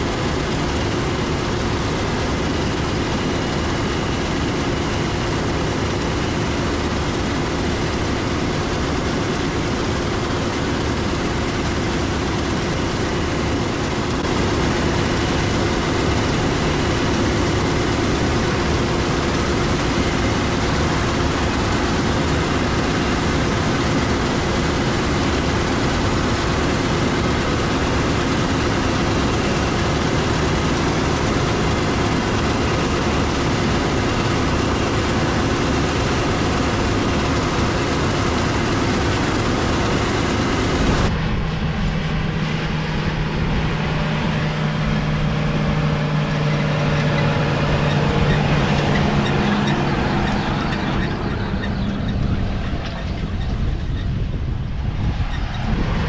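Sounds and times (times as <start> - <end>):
diesel harvest machinery running: 0.0 - 56.0.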